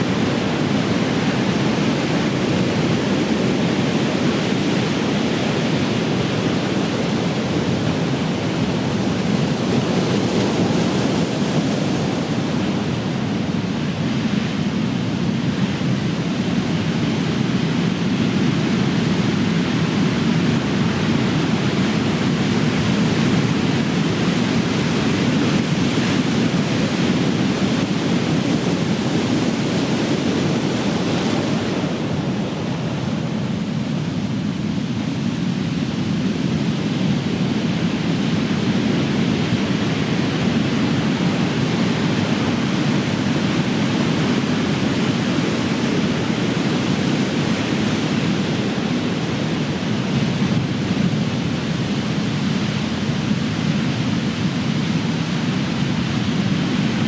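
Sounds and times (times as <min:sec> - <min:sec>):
ocean waves breaking: 0:20.6 - 0:57.0.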